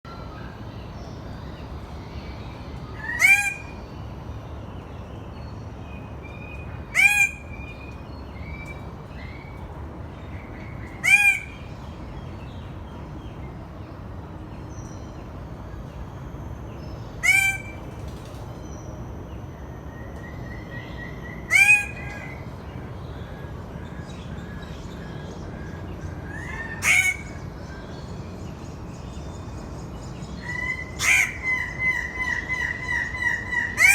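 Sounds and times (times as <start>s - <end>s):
bird of paradise calling: 2.9s - 3.9s, 6.3s - 9.6s, 10.2s - 12.0s, 16.8s - 17.9s, 20.3s - 29.0s, 29.9s - 33.9s.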